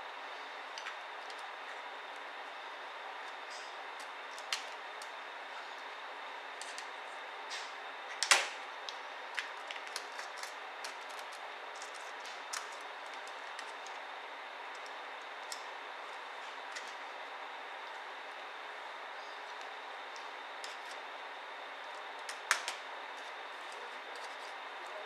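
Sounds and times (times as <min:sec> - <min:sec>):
small laptop parts clicking: 0:09.3 - 0:14.0, 0:22.2 - 0:23.3.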